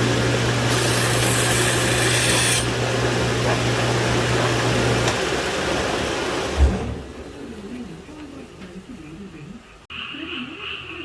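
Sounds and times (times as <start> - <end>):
power tool humming and grinding: 0.0 - 5.2.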